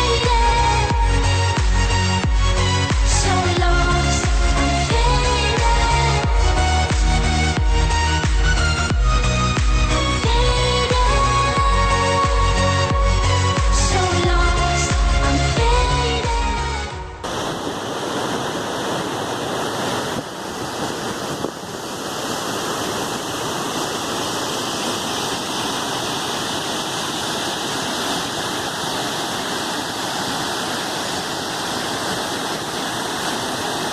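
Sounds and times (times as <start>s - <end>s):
background music: 0.0s - 17.3s
water rushing: 0.0s - 33.9s.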